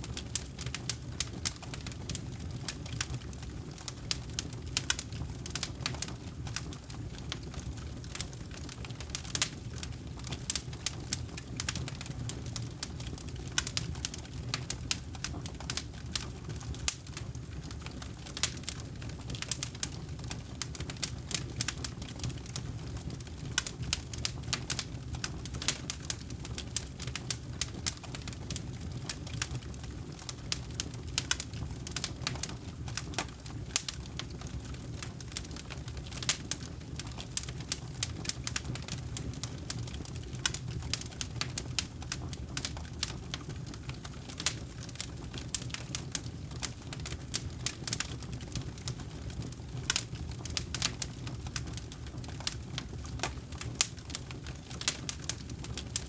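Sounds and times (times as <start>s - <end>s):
campfire crackling and popping: 0.0s - 56.0s.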